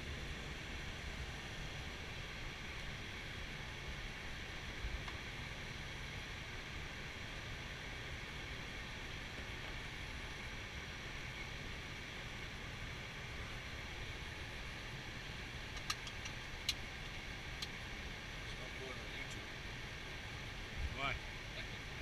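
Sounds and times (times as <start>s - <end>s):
cockpit noise in flight: 0.0s - 22.0s
sharp clicks: 15.8s - 16.8s.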